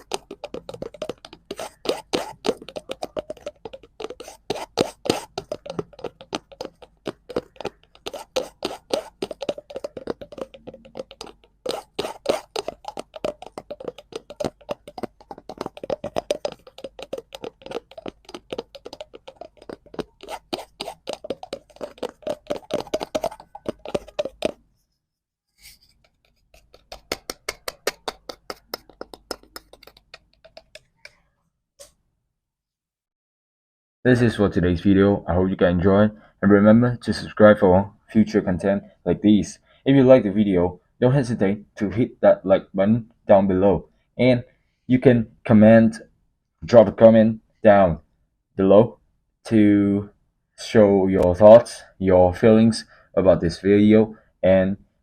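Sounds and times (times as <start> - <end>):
rapid tapping on cardboard: 0.0 - 24.7, 26.2 - 31.1.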